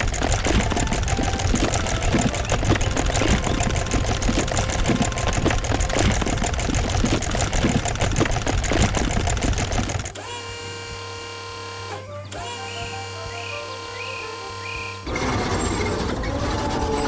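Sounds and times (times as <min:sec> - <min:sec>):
hydraulic drill rattling: 0:00.0 - 0:11.8
background music: 0:11.2 - 0:15.1.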